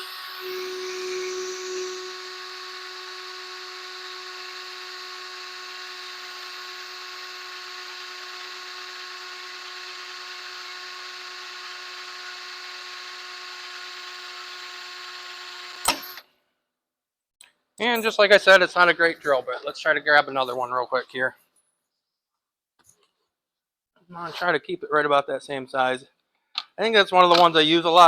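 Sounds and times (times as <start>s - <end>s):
electric drill whining: 0.0s - 16.2s.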